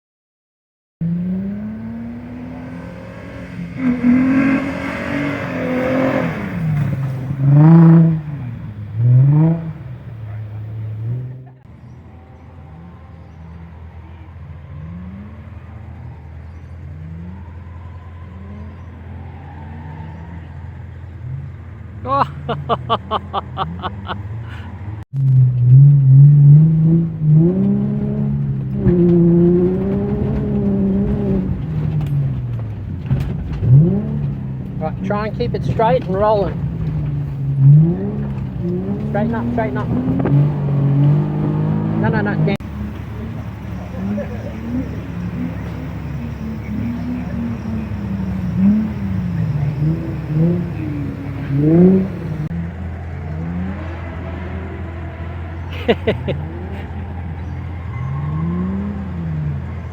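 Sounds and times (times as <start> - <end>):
car engine accelerating: 1.0 - 59.9.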